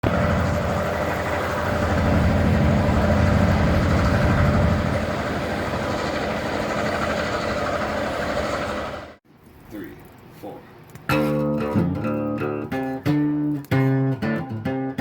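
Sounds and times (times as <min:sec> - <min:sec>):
locomotive engine drone: 0:00.0 - 0:09.2
train noise: 0:00.0 - 0:09.2.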